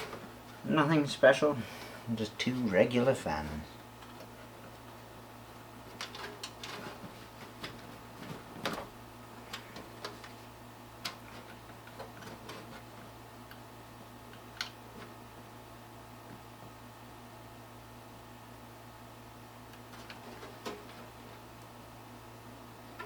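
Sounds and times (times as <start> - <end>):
steady low hum: 0.0 - 23.0
computer parts clicking and knocking: 5.9 - 8.9.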